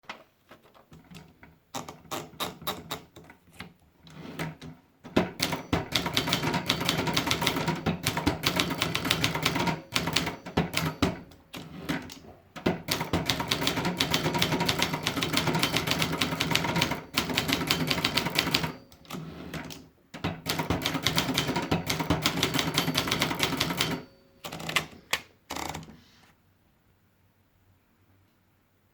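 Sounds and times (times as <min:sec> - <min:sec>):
typewriter key strikes: 0:05.2 - 0:11.3, 0:12.6 - 0:19.2, 0:20.2 - 0:25.8.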